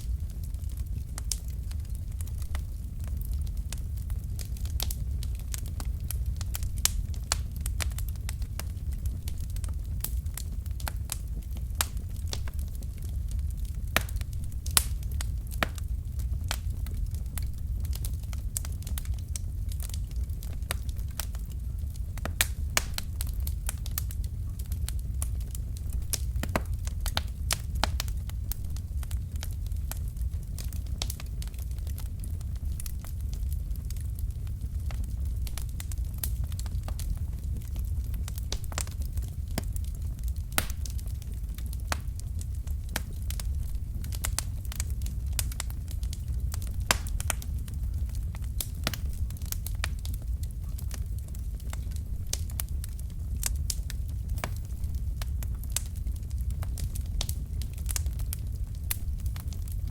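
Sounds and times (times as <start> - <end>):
low rumble of flame: 0.0 - 59.9
wood fire crackling: 0.0 - 59.9
sharp pops and snaps: 40.5 - 41.1.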